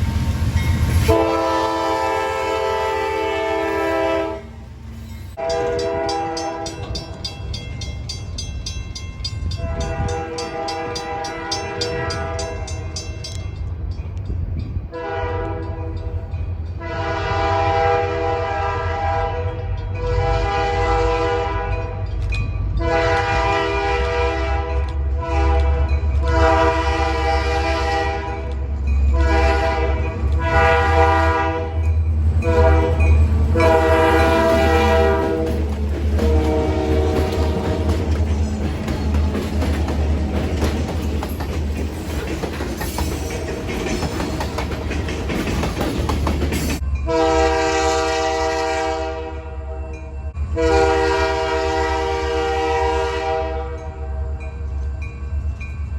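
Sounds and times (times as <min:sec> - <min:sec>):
passing train rumble: 0:00.0 - 0:55.9
locomotive air horn blasts: 0:01.1 - 0:04.6, 0:05.4 - 0:07.0, 0:09.6 - 0:12.8, 0:14.9 - 0:16.0, 0:16.8 - 0:22.0, 0:22.8 - 0:28.5, 0:29.1 - 0:38.1, 0:47.1 - 0:54.4.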